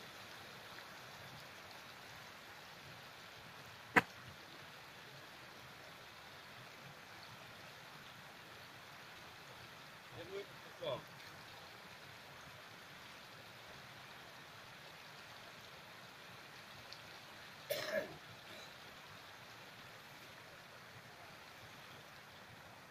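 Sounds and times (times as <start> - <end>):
faint outdoor hiss: 0.0 - 22.9
person clearing throat: 17.7 - 18.7.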